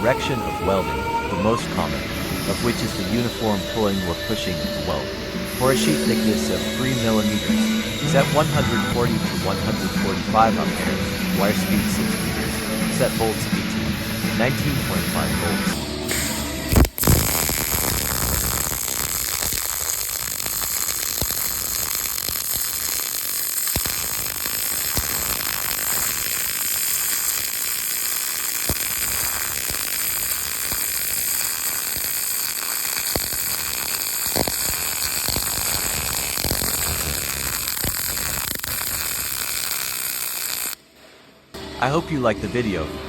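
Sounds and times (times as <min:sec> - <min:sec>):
welding arc crackling sizzle: 0:01.6 - 0:40.8
welding pops: 0:16.1 - 0:40.8.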